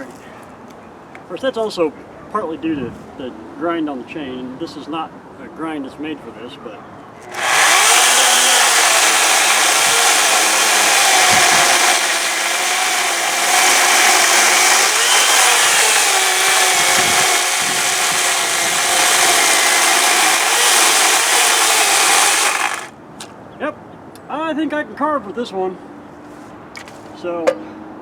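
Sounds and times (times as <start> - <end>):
electric chainsaw cutting log: 7.3 - 22.9.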